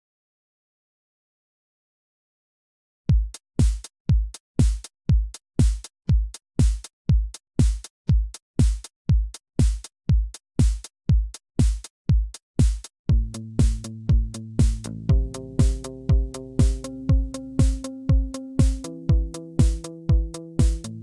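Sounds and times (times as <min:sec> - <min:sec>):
drum machine kick drum: 0:03.1 - 0:21.0
synth bass line: 0:13.1 - 0:19.4.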